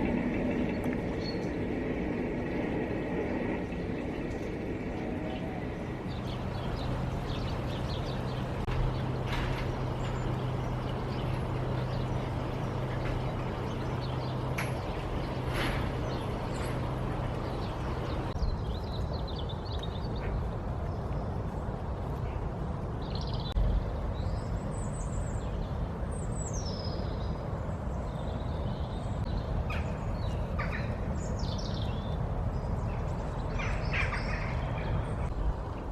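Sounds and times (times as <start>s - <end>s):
low motor hum: 0.0s - 26.1s
outdoor background noise: 0.0s - 35.9s.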